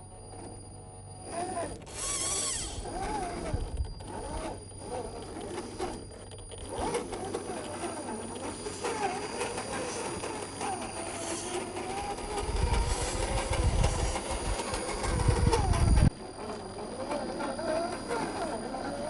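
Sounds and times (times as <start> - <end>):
electric motor and gears whining: 0.0 - 19.0.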